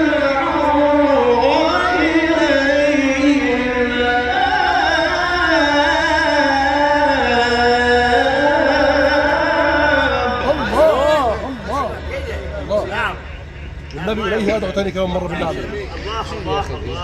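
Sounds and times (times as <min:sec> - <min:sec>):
man reciting melismatic chant: 0:00.0 - 0:17.0.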